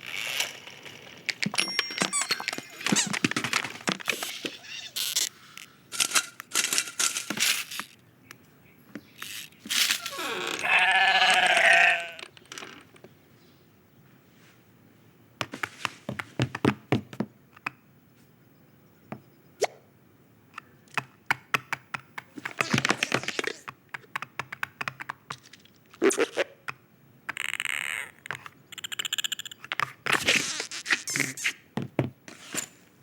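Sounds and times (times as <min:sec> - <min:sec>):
rustling and scraping: 0:00.0 - 0:08.0, 0:09.0 - 0:10.7, 0:31.2 - 0:33.0
small taps and clicks: 0:23.7 - 0:25.7.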